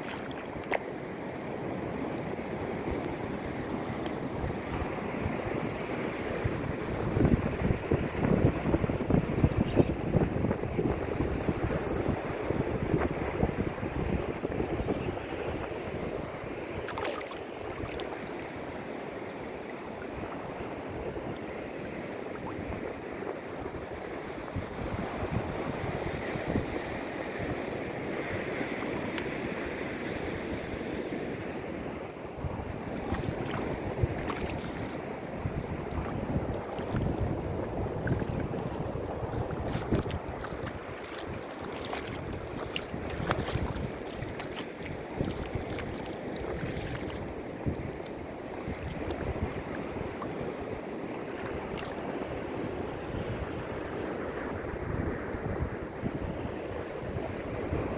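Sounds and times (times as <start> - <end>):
sea waves washing: 0.0 - 55.3
wind gusting on microphone: 1.8 - 16.9, 20.1 - 57.9.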